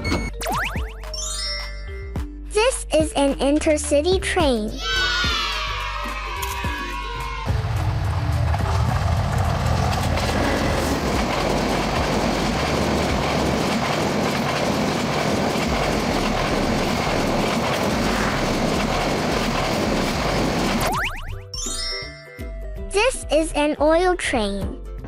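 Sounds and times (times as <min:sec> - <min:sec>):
train wheels rumbling on rails: 0:07.5 - 0:20.9.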